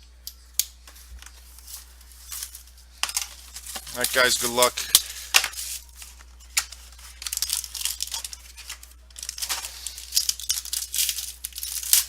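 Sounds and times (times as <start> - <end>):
plastic wrapping tearing and crinkling: 0.9 - 12.0.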